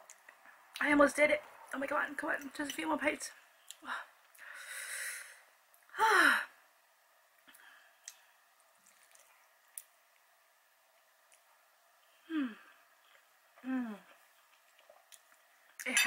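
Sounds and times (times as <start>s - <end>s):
woman moaning: 12.3s - 12.7s.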